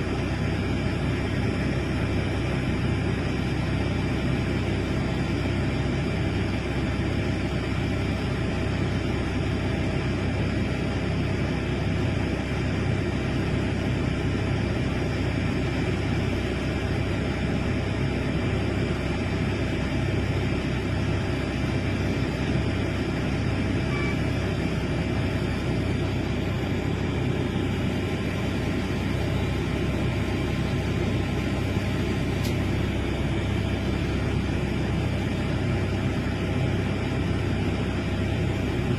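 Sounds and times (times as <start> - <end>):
excavator engine drone: 0.0 - 38.9
faint high whine: 18.9 - 38.9.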